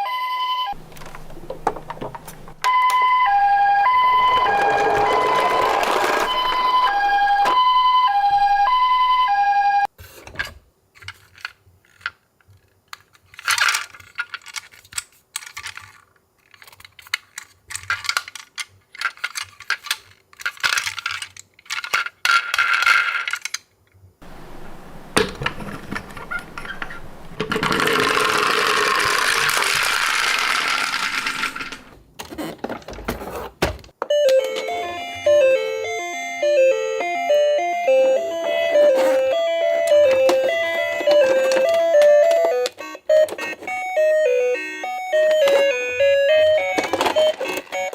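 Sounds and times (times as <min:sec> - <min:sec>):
toy ambulance siren: 0:00.0 - 0:00.8, 0:02.6 - 0:09.9, 0:25.8 - 0:31.7, 0:34.0 - 0:47.9
toy cars clicking and rattling: 0:04.5 - 0:06.6, 0:11.0 - 0:24.0, 0:25.4 - 0:31.9, 0:39.9 - 0:43.8, 0:45.3 - 0:47.9.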